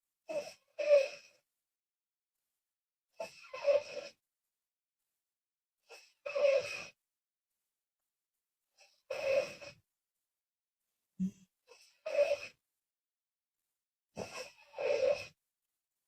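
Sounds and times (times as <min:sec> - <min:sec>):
woman snoring: 0:00.3 - 0:01.4, 0:03.2 - 0:04.2, 0:05.9 - 0:07.0, 0:08.8 - 0:09.8, 0:11.2 - 0:12.6, 0:14.2 - 0:15.4.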